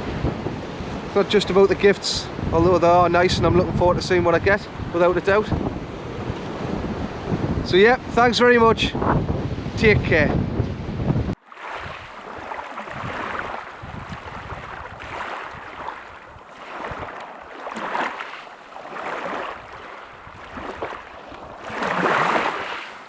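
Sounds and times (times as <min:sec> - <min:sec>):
small waves washing ashore: 0:11.4 - 0:23.0.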